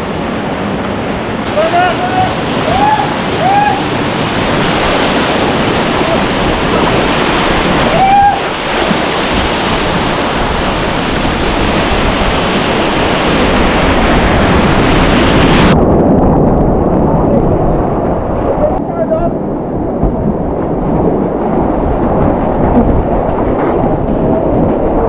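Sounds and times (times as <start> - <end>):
whitewater rapids rushing: 0.0 - 15.8.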